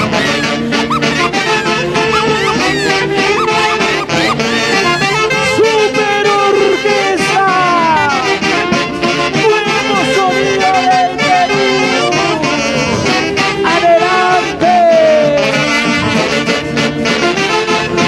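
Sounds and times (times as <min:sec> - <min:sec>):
dance orchestra music: 0:00.0 - 0:07.2, 0:08.0 - 0:14.6.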